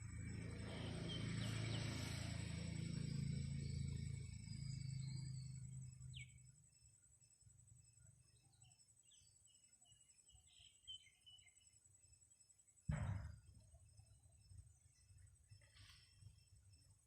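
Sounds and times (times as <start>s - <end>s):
low background rumble: 0.0s - 10.6s
birds chirping: 0.3s - 7.3s, 7.9s - 11.8s.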